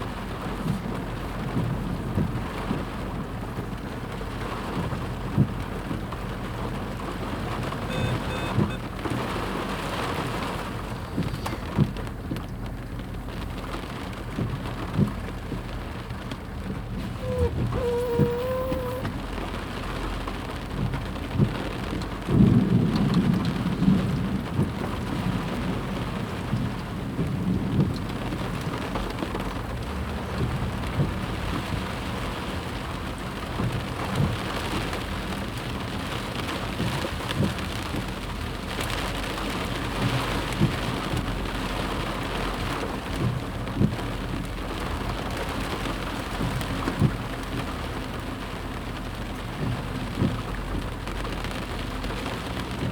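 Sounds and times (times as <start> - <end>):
heavy rain falling: 0.0 - 52.9
low thunder rumbles: 22.2 - 28.5.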